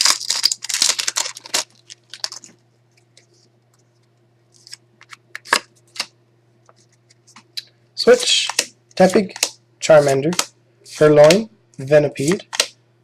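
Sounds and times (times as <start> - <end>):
foil wrapper tearing and crinkling: 0.0 - 2.6.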